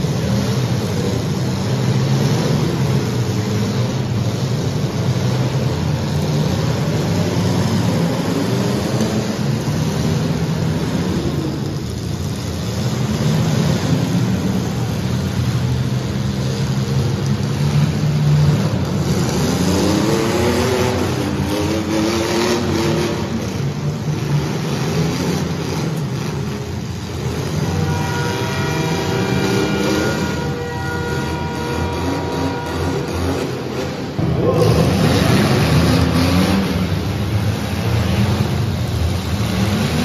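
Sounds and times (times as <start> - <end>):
car engines revving: 0.0 - 40.0
steady horn-like tone: 27.7 - 34.0.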